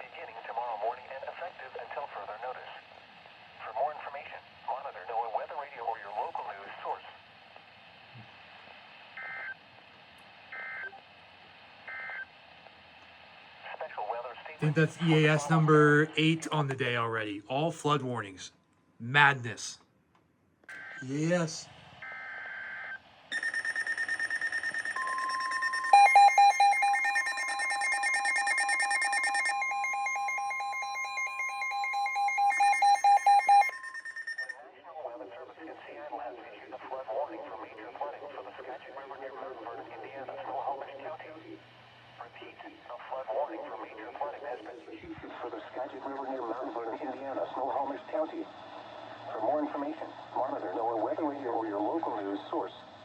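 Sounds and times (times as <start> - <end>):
faint radio hiss: 0.0 - 19.8, 20.9 - 21.8, 34.6 - 53.0
pulsing warbling receiver alarm: 14.6 - 16.3, 23.4 - 34.5
fast-pulsing beep: 14.6 - 16.7, 23.3 - 34.5
steady warning tone: 14.6 - 18.2, 23.4 - 34.5.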